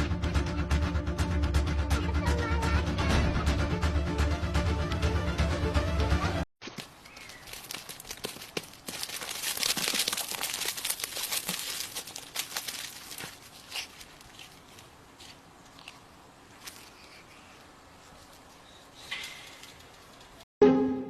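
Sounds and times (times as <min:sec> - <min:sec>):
crinkling and rustling: 0:06.6 - 0:20.4.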